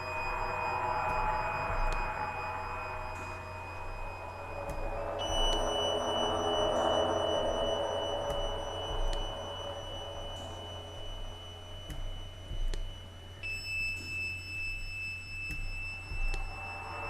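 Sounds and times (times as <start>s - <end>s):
high pure electronic tones: 0.0s - 17.0s
low hum: 0.0s - 17.0s
faint ticks: 3.1s - 5.7s, 10.3s - 16.9s.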